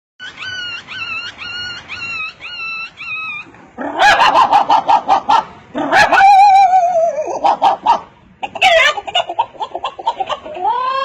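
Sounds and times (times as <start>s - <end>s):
dog whining yelps: 0.2s - 9.3s
dog barking: 3.8s - 6.4s, 7.4s - 9.0s.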